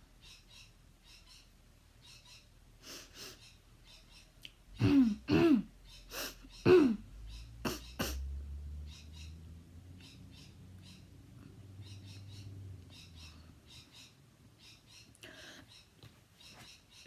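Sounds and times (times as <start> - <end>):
person coughing harshly: 4.8 - 5.7, 6.7 - 7.0, 7.7 - 8.2.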